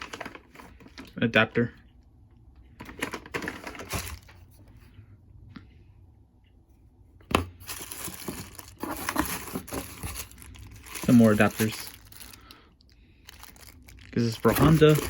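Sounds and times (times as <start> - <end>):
plastic packaging crinkling: 2.9 - 4.4, 7.5 - 15.0.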